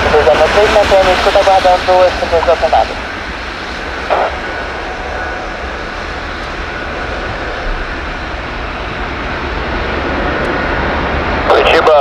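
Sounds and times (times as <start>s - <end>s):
jet engines running: 0.0s - 12.0s.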